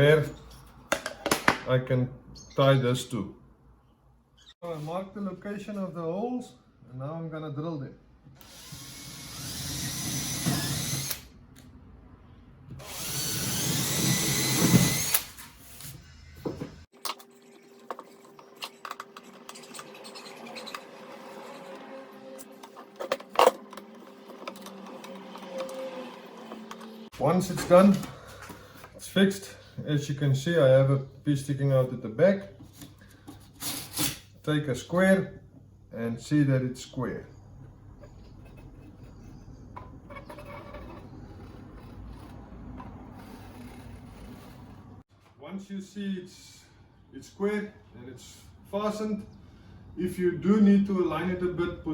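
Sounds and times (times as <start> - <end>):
electric drill boring into board: 8.4 - 11.3, 12.8 - 15.3.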